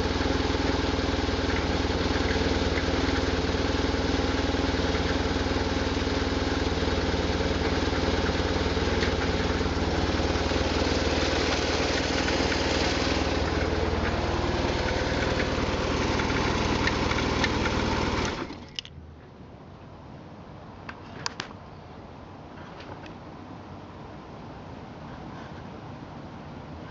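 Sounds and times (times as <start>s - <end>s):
motorcycle engine idling: 0.0s - 18.8s
engine rattle: 0.0s - 18.9s
sharp clicks: 14.8s - 18.9s.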